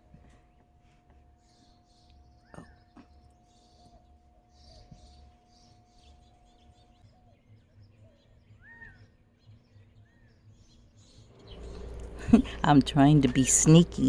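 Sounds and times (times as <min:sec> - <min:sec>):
high bird twittering: 0:11.1 - 0:14.0
quail chirping: 0:11.4 - 0:13.8.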